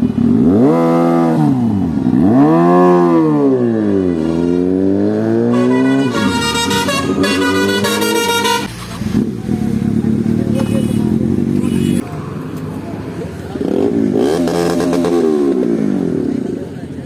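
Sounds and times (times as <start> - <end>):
motorcycle engine revving: 0.0 - 17.0
vehicle horn: 5.4 - 8.8.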